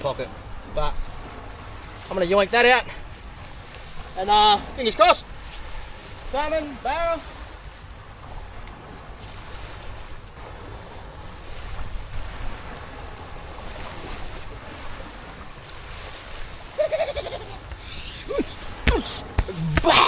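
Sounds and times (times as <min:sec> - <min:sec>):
wind: 0:00.0 - 0:20.0
rushing water: 0:16.8 - 0:20.0
sharp knocks: 0:17.2 - 0:20.0.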